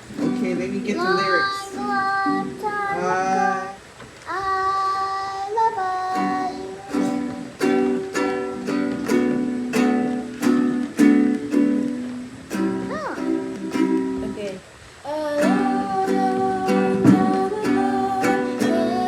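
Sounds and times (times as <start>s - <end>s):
ukulele strumming: 0.0s - 19.0s
child singing a wavering note: 1.0s - 7.8s, 12.8s - 13.5s, 15.0s - 19.0s.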